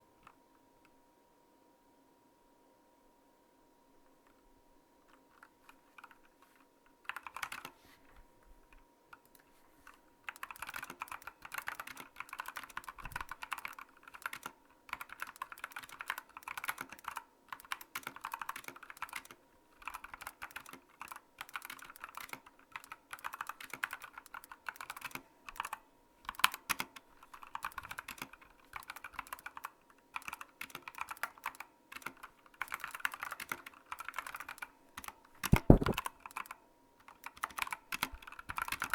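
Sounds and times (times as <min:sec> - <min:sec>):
mechanical keyboard typing: 0:07.0 - 0:07.7, 0:10.3 - 0:26.8, 0:27.5 - 0:34.7, 0:35.6 - 0:36.5, 0:37.1 - 0:38.9.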